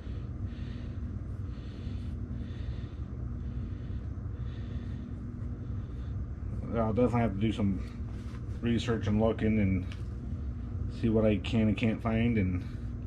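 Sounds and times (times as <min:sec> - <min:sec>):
person breathing: 0:00.0 - 0:06.7
low background rumble: 0:00.0 - 0:13.0.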